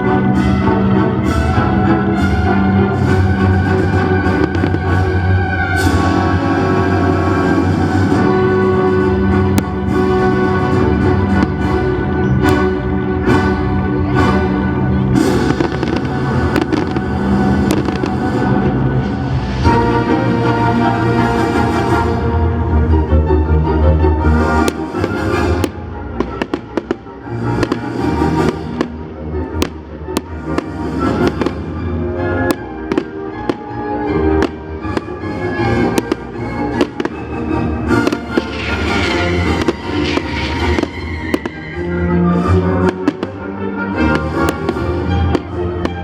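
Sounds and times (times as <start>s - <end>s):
loud music: 0.0s - 46.0s
firework bangs and pops: 4.3s - 5.2s, 11.3s - 11.8s, 15.2s - 18.8s, 24.6s - 29.0s, 29.6s - 31.7s, 32.4s - 33.8s, 34.4s - 35.2s, 35.8s - 41.8s, 42.9s - 46.0s.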